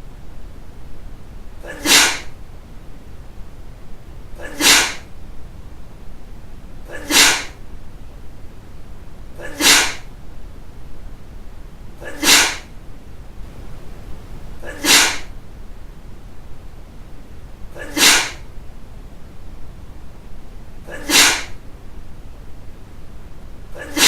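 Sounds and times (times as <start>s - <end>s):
person sneezing: 1.6s - 2.4s, 4.4s - 5.1s, 6.8s - 7.6s, 9.4s - 10.1s, 12.0s - 12.8s, 14.6s - 15.4s, 17.7s - 18.5s, 20.8s - 21.6s, 23.7s - 24.0s.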